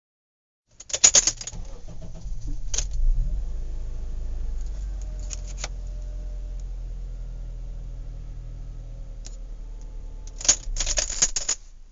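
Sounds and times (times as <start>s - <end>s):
car engine and road rumble: 0.7s - 11.9s
loose items rattling: 0.8s - 3.0s, 10.2s - 11.7s.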